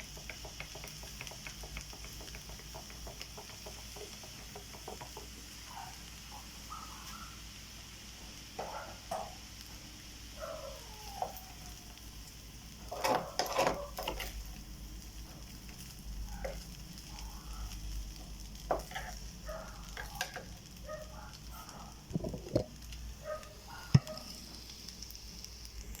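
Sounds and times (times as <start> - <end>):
utensil knocking: 0.0 - 5.3, 22.1 - 22.7
rice sizzling in a pan: 0.0 - 26.0
stirring: 18.7 - 19.3.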